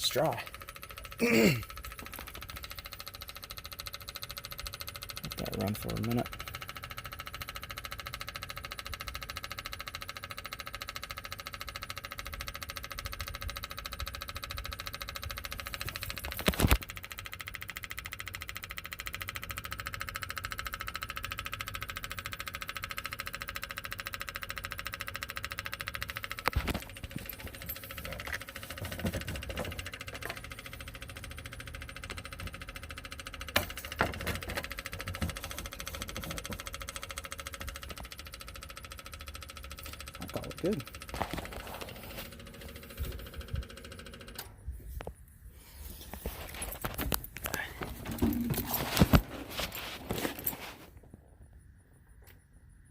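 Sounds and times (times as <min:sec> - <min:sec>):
diesel mower engine running: 0:00.0 - 0:09.7, 0:19.5 - 0:50.9
engine rattle: 0:00.0 - 0:44.6, 0:45.6 - 0:51.0.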